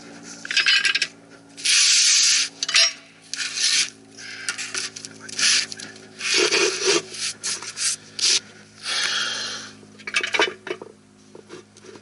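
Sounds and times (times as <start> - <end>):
rasping scraping strokes: 3.3 - 4.0.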